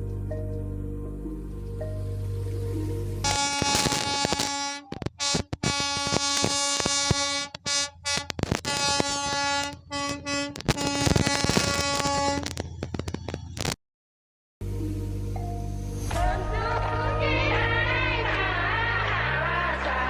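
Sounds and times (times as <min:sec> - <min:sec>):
train horn: 0:03.2 - 0:12.4.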